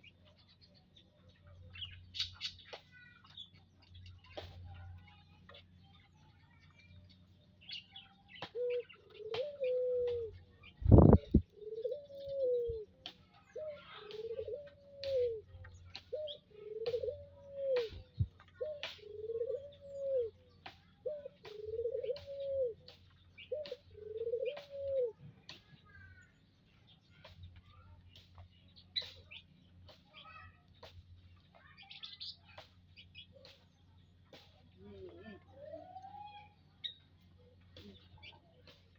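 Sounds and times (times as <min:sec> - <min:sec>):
small birds chirping: 0:00.0 - 0:38.9
dove cooing: 0:08.4 - 0:13.0, 0:13.6 - 0:15.5, 0:16.1 - 0:20.4, 0:21.0 - 0:25.2.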